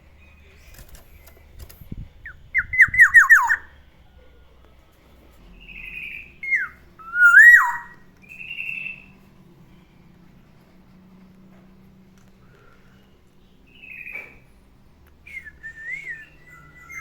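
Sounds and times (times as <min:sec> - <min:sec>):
oriole singing: 0:02.2 - 0:09.2, 0:15.2 - 0:17.0.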